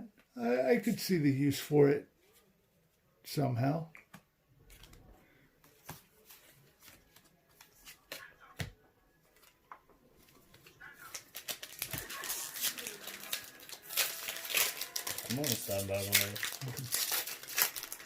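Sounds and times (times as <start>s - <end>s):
foil wrapper crinkling: 11.0s - 18.0s.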